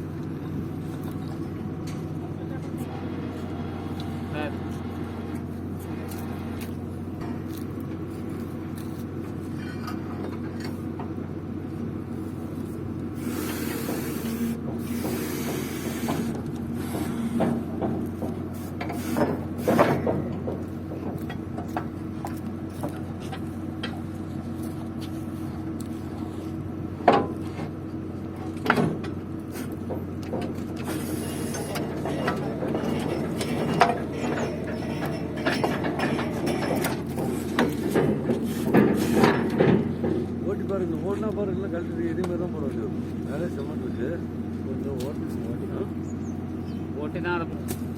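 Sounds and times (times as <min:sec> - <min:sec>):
drilling rig engine running: 0:00.0 - 0:47.9
hissing bursts: 0:13.2 - 0:17.3, 0:18.6 - 0:19.9
sharp metal knocks: 0:30.4 - 0:40.3.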